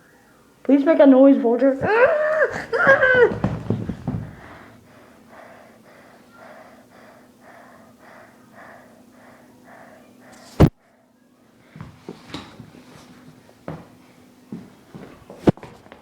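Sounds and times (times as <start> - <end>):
faint steady hum: 0.0 - 16.0
rapid panting breaths: 2.5 - 11.2.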